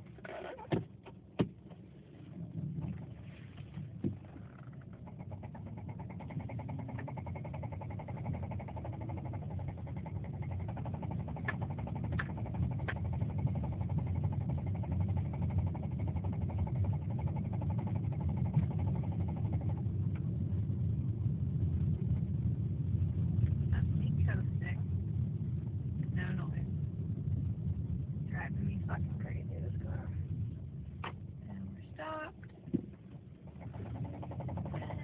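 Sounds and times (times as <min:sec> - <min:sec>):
car engine running: 0:00.0 - 0:35.0
rapid even engine knocking: 0:04.0 - 0:20.0, 0:32.0 - 0:35.0.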